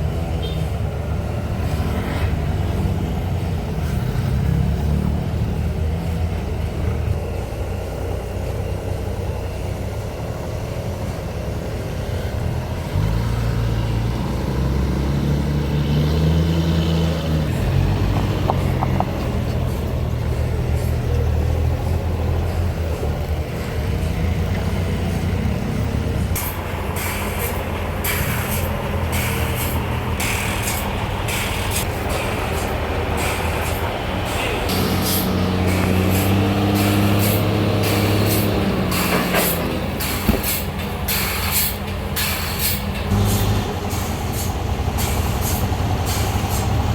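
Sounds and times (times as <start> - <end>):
heavy engine humming: 0.0 - 46.9
short hissing bursts: 40.0 - 46.7.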